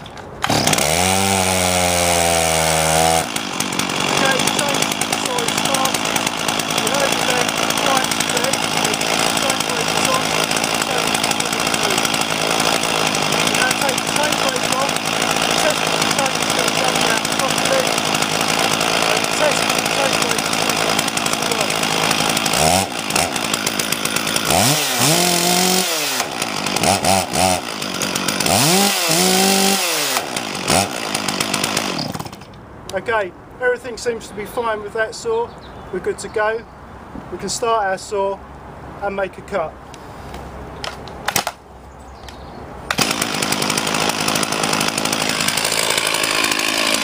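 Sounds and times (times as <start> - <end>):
chainsaw idling and revving: 0.0 - 33.1, 42.9 - 47.0.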